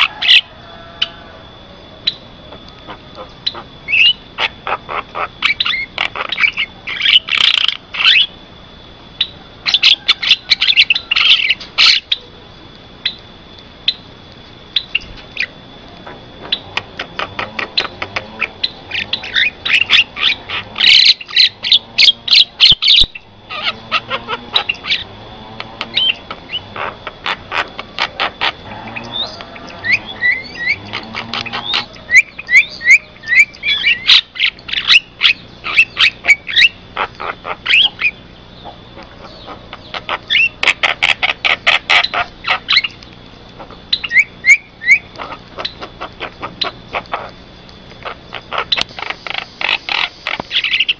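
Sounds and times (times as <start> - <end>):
faint steady high tone: 0.0 - 36.8
bird clicking chatter: 2.0 - 8.3, 9.2 - 50.9.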